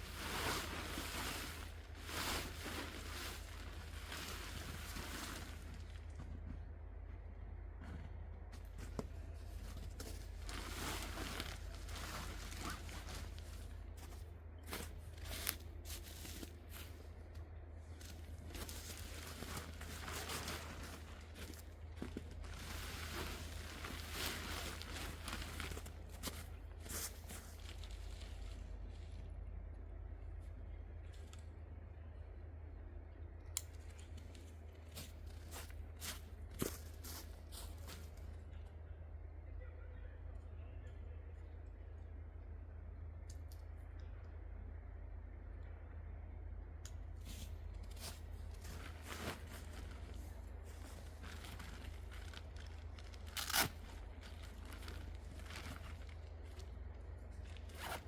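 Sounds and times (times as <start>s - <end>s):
footsteps crunching in snow: 0.0s - 6.7s, 8.5s - 29.4s, 34.0s - 38.4s, 47.2s - 58.0s
rustling and crinkling: 0.0s - 31.6s, 33.5s - 38.8s, 46.9s - 58.0s.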